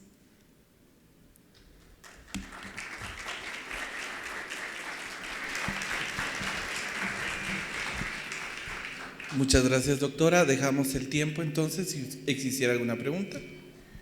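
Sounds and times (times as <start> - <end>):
audience applauding: 2.0 - 10.0.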